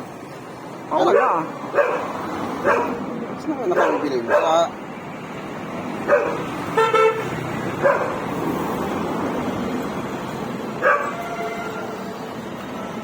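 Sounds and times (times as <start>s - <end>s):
steady background noise: 0.0s - 13.0s
dog barking: 1.0s - 3.1s, 3.7s - 4.7s, 6.0s - 6.5s, 7.8s - 8.3s, 10.8s - 11.2s.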